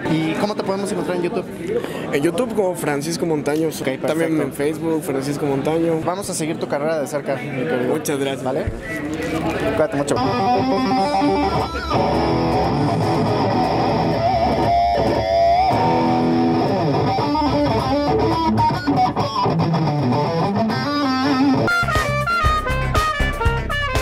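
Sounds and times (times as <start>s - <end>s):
electric guitar through amplifier: 9.0s - 24.0s.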